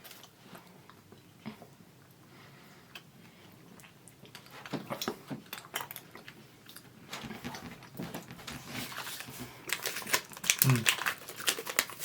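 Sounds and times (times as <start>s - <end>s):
popping candy crackling: 4.2s - 12.0s
chewing chocolate: 9.8s - 12.0s.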